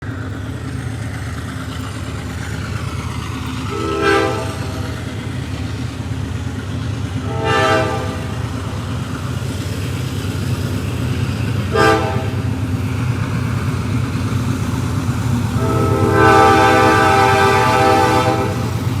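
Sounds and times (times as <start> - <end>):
train rolling by: 0.0 - 19.0
train horn blasts: 3.7 - 5.0, 7.2 - 8.5, 11.7 - 12.5, 15.6 - 18.8.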